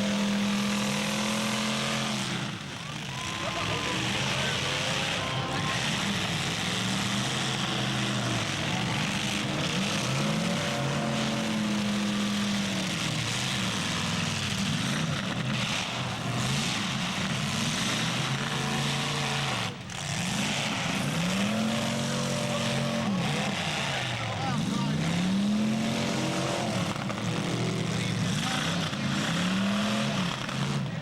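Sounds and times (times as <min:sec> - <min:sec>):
arena noise: 0:00.0 - 0:31.0
car engines revving: 0:00.0 - 0:31.0.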